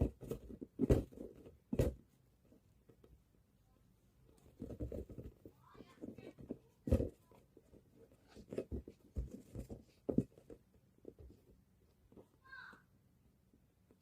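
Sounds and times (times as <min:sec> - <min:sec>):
ball bouncing thumps: 0:00.0 - 0:02.2, 0:08.4 - 0:11.4.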